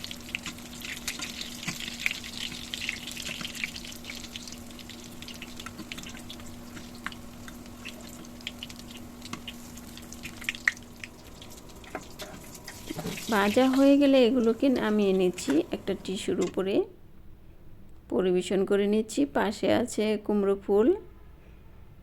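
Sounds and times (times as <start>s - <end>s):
fritters frying in hot oil: 0.0s - 16.2s
steady low hum: 0.0s - 18.1s.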